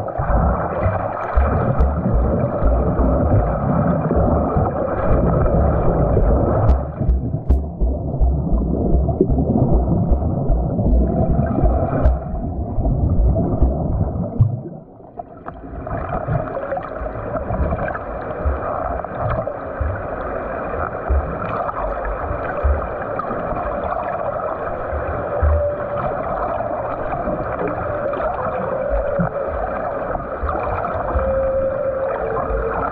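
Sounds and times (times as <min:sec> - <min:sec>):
swimmer splashing water: 0:00.0 - 0:14.5
rush of water: 0:00.0 - 0:32.9.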